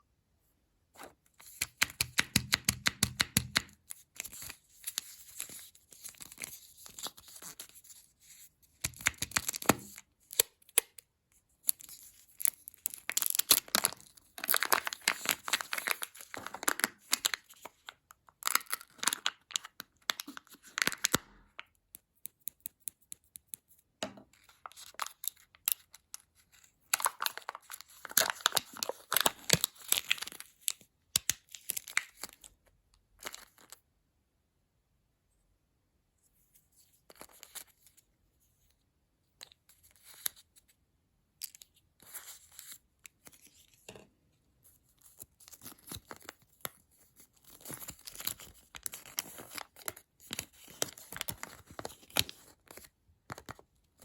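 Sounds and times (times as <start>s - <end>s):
wrappers crinkling: 12.4s - 17.5s.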